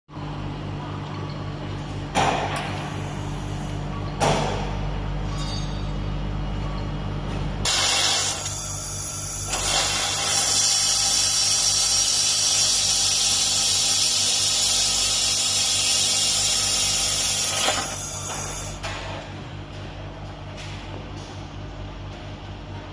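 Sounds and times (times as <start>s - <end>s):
machine hum: 1.4s - 22.6s
laser weld hissing: 7.7s - 18.8s.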